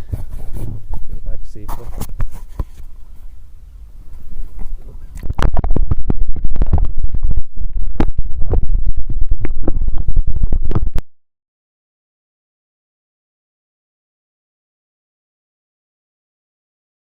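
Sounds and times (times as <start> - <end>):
rumbling and crackling on microphone: 0.0 - 11.1.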